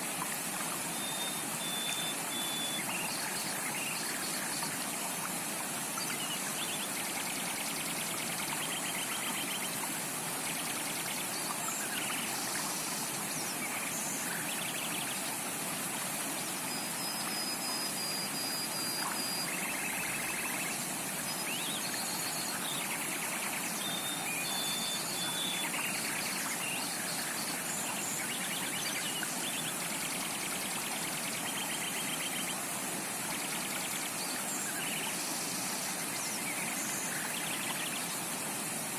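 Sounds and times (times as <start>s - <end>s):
stream running: 0.0s - 38.9s.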